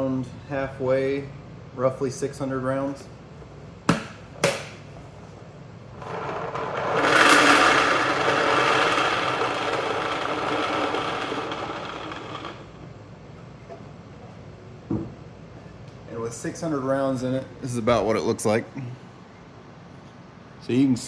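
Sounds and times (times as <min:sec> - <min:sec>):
paintballs pouring into container: 0:06.1 - 0:12.6.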